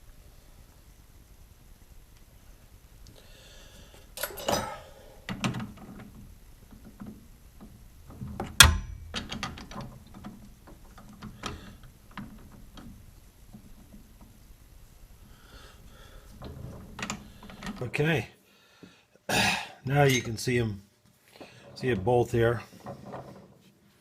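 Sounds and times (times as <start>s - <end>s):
metal clinks and knocks: 4.2s - 12.9s, 20.0s - 20.4s.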